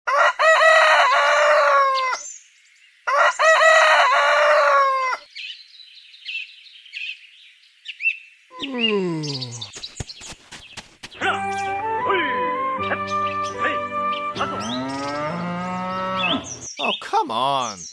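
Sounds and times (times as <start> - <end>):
rooster crowing: 0.1 - 2.2, 3.1 - 5.2
small birds chirping: 5.3 - 11.2, 16.2 - 17.9.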